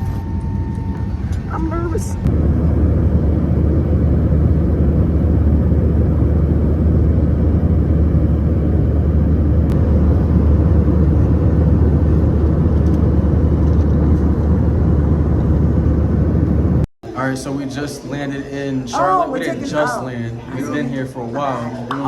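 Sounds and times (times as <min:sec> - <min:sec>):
airliner cabin engine rumble: 0:00.0 - 0:16.9.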